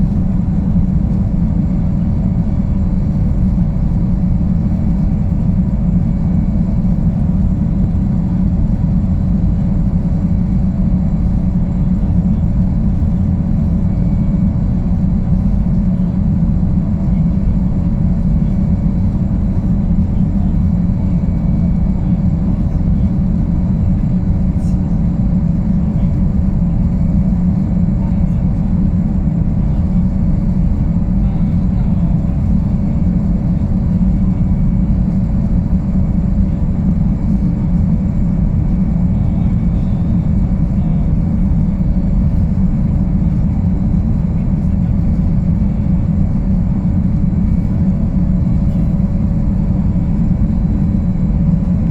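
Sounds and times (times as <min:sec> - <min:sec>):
faint steady whine: 0:00.0 - 0:51.9
low engine rumble: 0:00.0 - 0:51.9.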